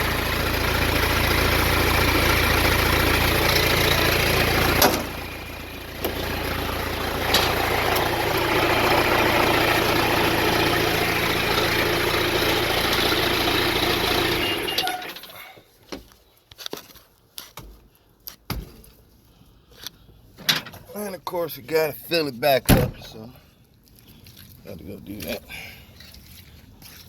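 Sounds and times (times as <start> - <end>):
engine idling: 0.0 - 15.6.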